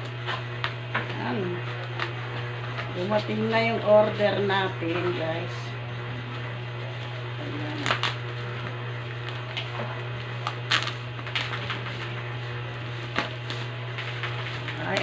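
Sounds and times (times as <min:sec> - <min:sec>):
plastic packaging crinkling: 0:07.7 - 0:12.2.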